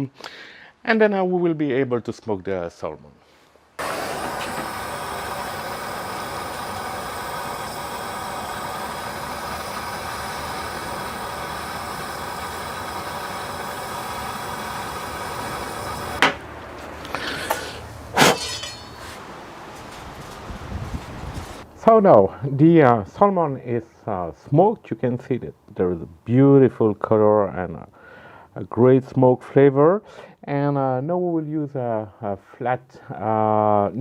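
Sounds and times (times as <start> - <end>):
gas torch hissing: 3.8 - 19.4, 20.2 - 21.7
sharp knocks: 16.2 - 16.4.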